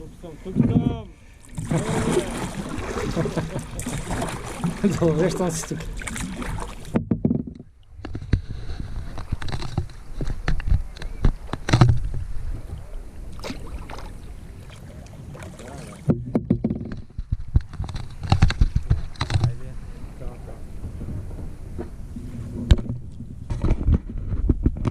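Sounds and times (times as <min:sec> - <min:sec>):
paddle splashing in water: 0:00.4 - 0:24.0
sharp knocks: 0:06.9 - 0:08.4, 0:16.1 - 0:19.6.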